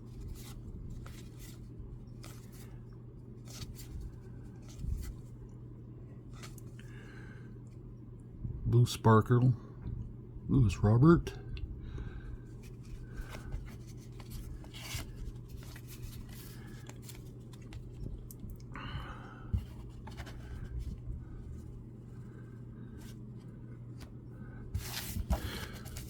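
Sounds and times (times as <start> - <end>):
card rustle: 0.0 - 5.4, 12.5 - 18.5, 19.5 - 22.3, 24.0 - 26.0
steady low hum: 0.0 - 26.0.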